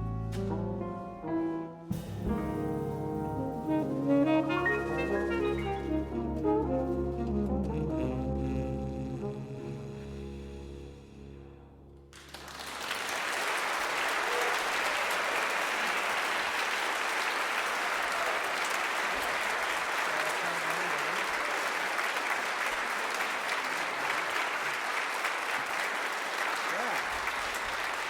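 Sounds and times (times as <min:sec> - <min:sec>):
audience applause: 0:12.1 - 0:28.0.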